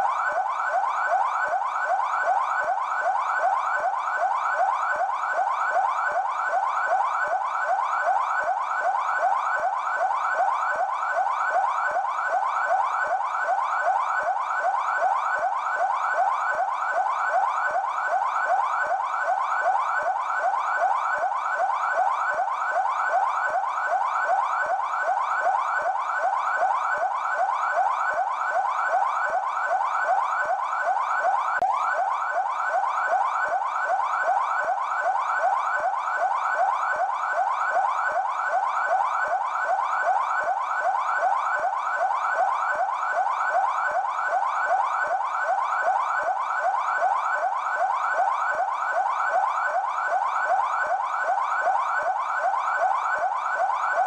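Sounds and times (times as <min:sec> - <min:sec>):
police siren yelping: 0:00.0 - 0:54.0.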